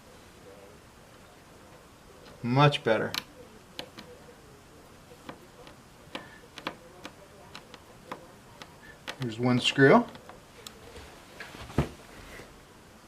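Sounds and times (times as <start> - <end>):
screwdriver clicking: 5.2 - 9.3.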